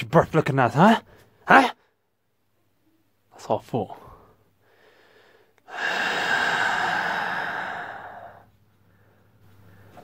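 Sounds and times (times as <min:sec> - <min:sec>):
person snoring: 0:05.7 - 0:08.5.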